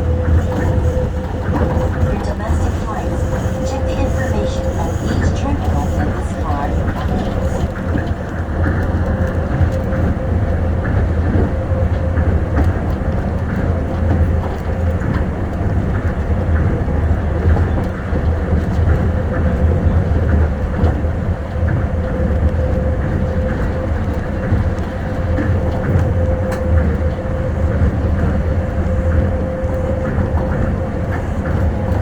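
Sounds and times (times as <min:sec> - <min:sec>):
steady whine: 0:00.0 - 0:15.4
train running gear rumble: 0:00.0 - 0:32.0.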